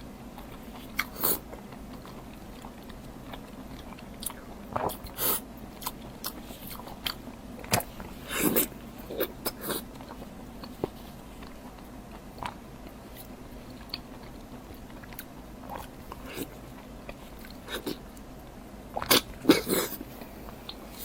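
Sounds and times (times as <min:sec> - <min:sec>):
chewing with wet mouth smacks: 0:00.2 - 0:21.0.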